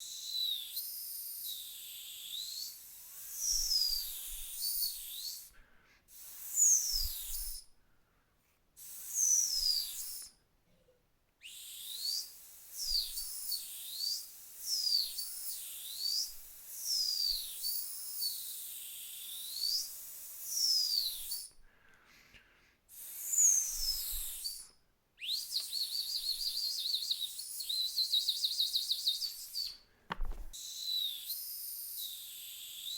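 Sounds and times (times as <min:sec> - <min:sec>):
faint hiss: 0:00.0 - 0:32.9
dog whistle swooping notes: 0:00.1 - 0:05.5, 0:09.1 - 0:10.3, 0:11.5 - 0:21.5, 0:30.6 - 0:32.9.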